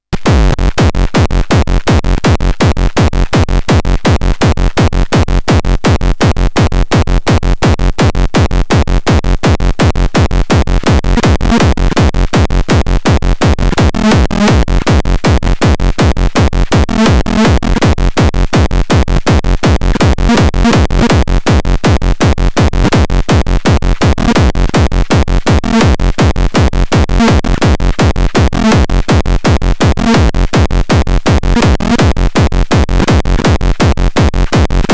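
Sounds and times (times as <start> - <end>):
minimal techno beat: 0.0 - 34.9
repeating synth notes: 13.4 - 18.2.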